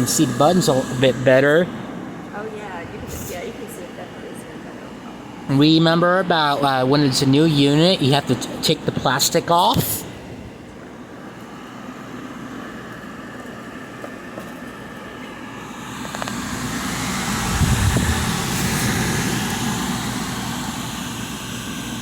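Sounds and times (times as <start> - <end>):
air conditioner running: 0.0 - 22.0
low rumble: 15.6 - 22.0.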